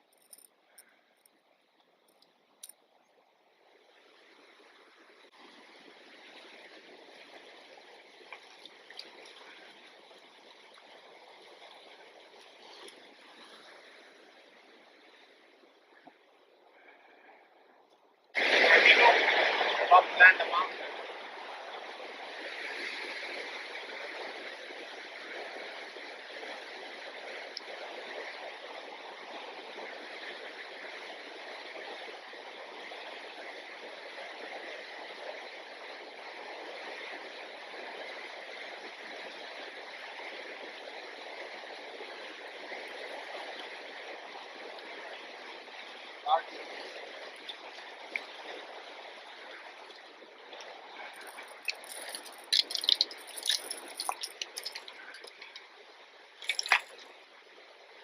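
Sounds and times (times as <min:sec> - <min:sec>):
flowing river water: 0:00.0 - 0:58.0
river water rushing: 0:18.4 - 0:29.6, 0:42.3 - 0:57.4
short splashes: 0:51.0 - 0:55.6, 0:56.4 - 0:57.1.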